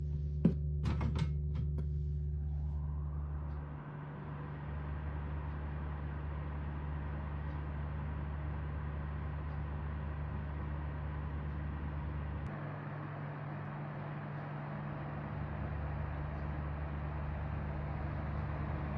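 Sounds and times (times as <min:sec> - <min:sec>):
low motor hum: 0:00.0 - 0:18.9.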